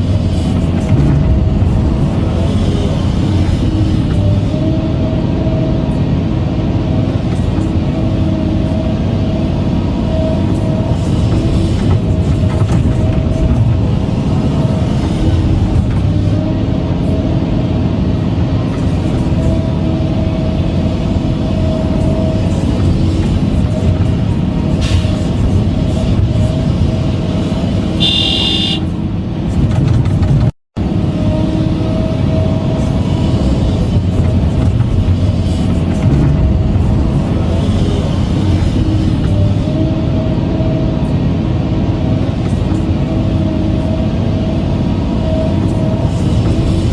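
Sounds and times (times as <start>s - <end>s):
heavy machine engine rumbling: 0.0s - 46.9s
vehicle engine running: 25.4s - 30.5s
high-pitched horn beep: 28.0s - 28.9s.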